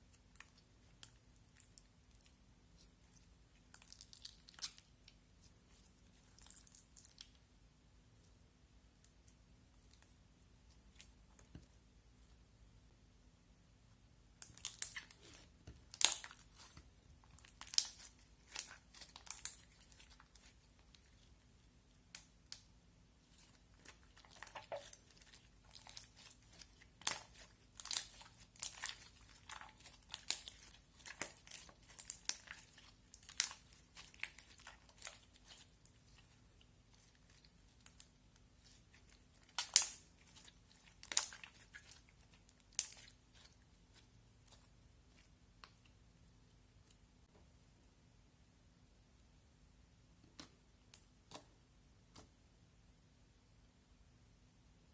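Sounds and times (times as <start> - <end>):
slime crackling and popping: 14.4 - 21.3, 22.0 - 45.8.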